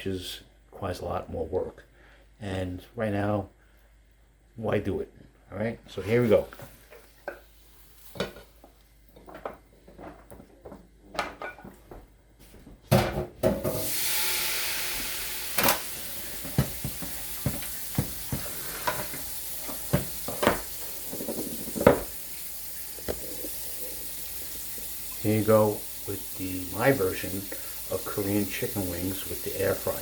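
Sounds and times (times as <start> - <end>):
steady hiss: 0.0 - 9.1, 13.7 - 30.0.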